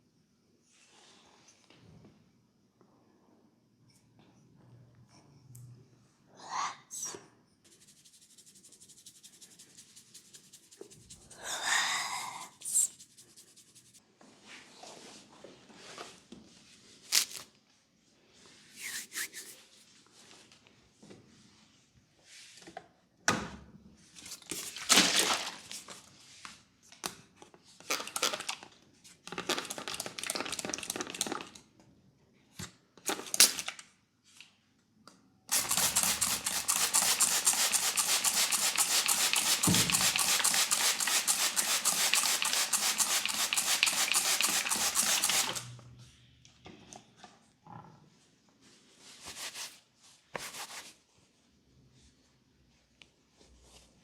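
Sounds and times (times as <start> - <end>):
hands rubbing hair and skin: 18.8 - 19.7, 35.5 - 45.6
fast even patter of hands: 35.5 - 45.6.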